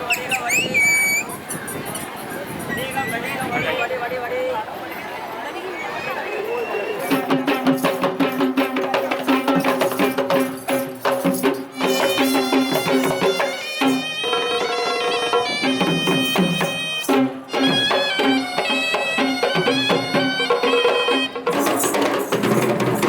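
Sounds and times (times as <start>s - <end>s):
shrill wind instrument: 0.0s - 3.4s, 11.7s - 22.1s
rapid drum strokes: 7.1s - 23.0s.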